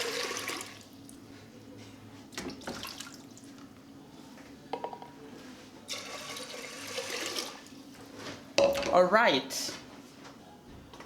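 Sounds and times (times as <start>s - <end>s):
water pouring into a pot: 0.0s - 0.9s, 5.9s - 7.7s.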